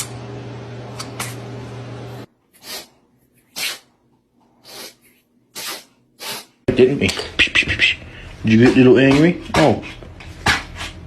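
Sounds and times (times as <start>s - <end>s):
pet sneezing: 2.6s - 3.9s, 4.6s - 6.6s
steady low hum: 6.7s - 11.0s.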